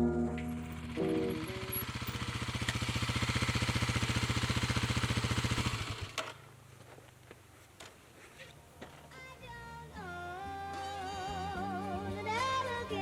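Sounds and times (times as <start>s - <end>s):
engine running: 0.0s - 7.4s.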